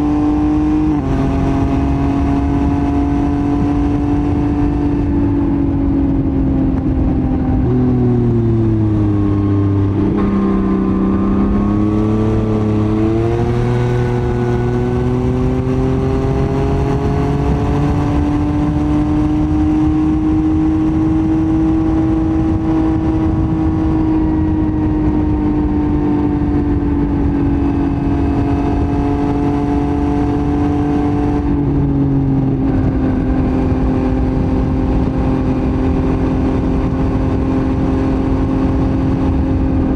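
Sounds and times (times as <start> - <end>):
motorcycle engine riding: 0.0 - 39.9.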